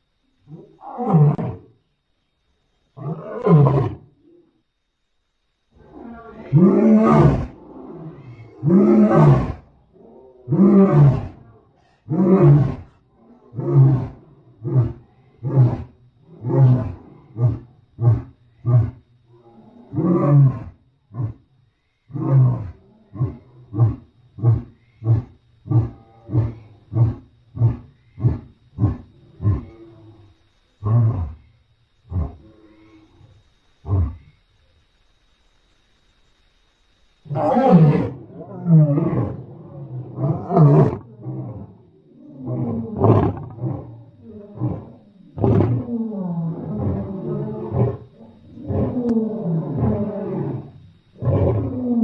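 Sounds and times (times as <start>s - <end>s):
lion roaring: 5.8s - 21.4s, 37.3s - 52.0s.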